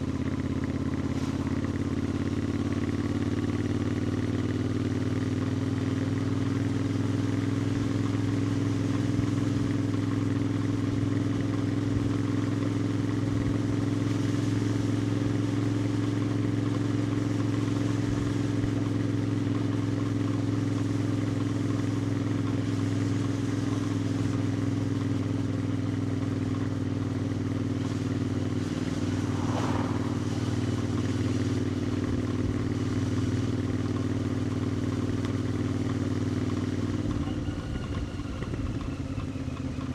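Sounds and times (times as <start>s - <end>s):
motorcycle engine cruising: 14.2s - 39.9s.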